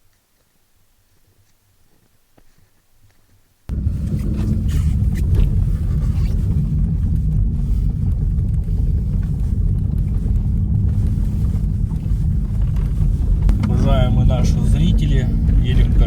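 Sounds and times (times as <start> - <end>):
car engine and road rumble: 3.7 - 16.0.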